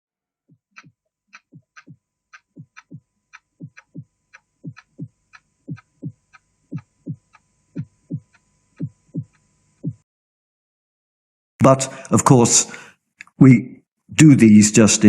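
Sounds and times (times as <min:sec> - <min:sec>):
faint steady hum: 0:00.5 - 0:10.0
heartbeat thumps: 0:00.5 - 0:10.0
sharp ticks: 0:00.5 - 0:10.0.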